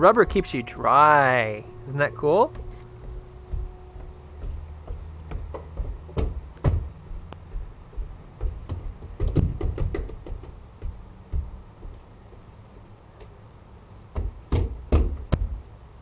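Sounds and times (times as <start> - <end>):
low rumble: 0.0 - 9.2
knocks and taps: 2.5 - 12.4, 14.1 - 15.5.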